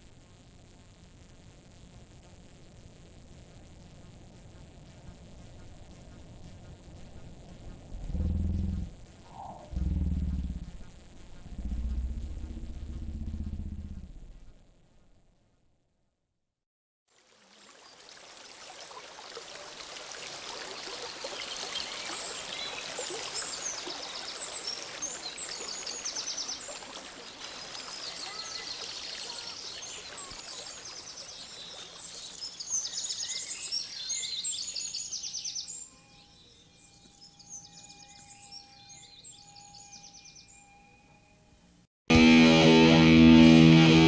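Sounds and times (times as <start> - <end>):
faint two-tone hum: 0.0 - 14.7
birds chirping and trilling: 4.4 - 14.5
rushing noise: 7.9 - 14.6.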